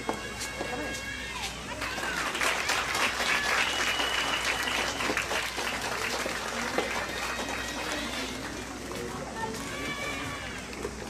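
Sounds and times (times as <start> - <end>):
voices calling out: 0.0 - 11.0
spectators clapping: 1.7 - 8.9.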